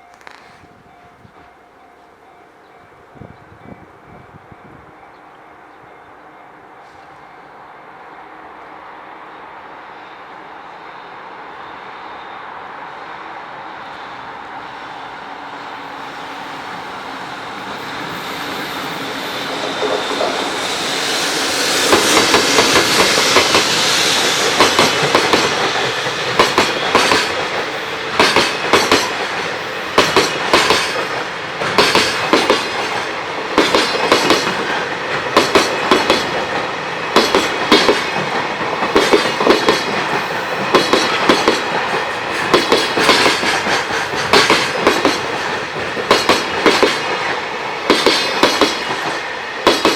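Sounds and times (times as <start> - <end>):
train rumble: 11.7 - 49.9.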